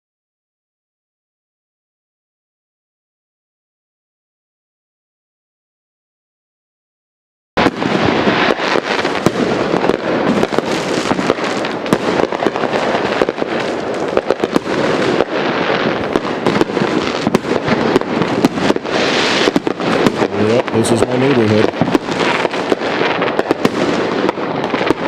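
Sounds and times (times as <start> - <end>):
fireworks and firecrackers banging: 7.6 - 25.0.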